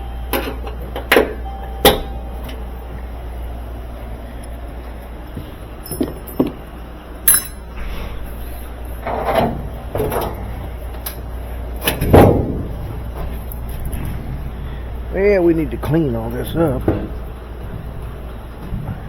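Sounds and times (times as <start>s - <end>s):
steady low hum: 0.0s - 19.0s
tools clinking and knocking: 5.8s - 6.6s, 7.2s - 7.7s.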